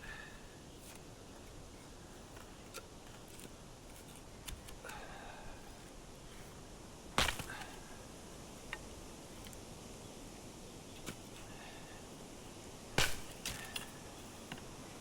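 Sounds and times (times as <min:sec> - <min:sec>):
wood fire crackling: 0:01.2 - 0:09.7
loud sharp crack: 0:13.0 - 0:13.7.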